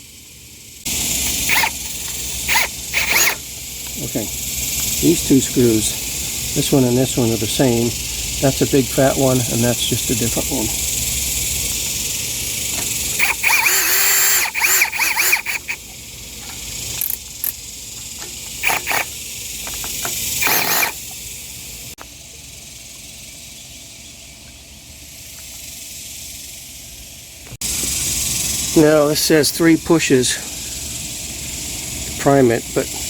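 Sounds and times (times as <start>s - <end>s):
cordless drill whirring: 1.0s - 4.0s, 12.8s - 15.8s, 18.6s - 19.2s, 20.3s - 21.1s.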